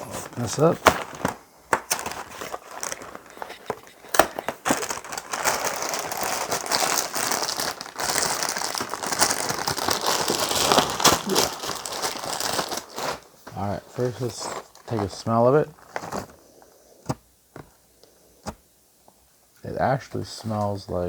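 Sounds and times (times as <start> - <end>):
plastic bag crinkling: 0.0 - 16.9
cardboard snapping: 4.0 - 5.2.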